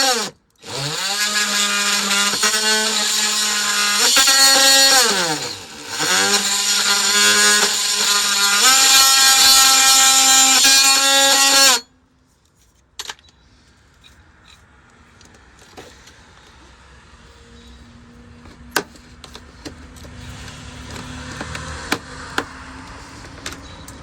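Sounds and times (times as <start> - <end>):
power tool motor whining: 0.0 - 11.9.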